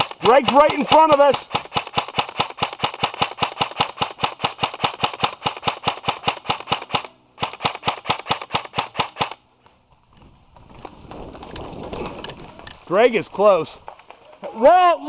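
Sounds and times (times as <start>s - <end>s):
airsoft gun firing full auto: 0.0s - 9.4s.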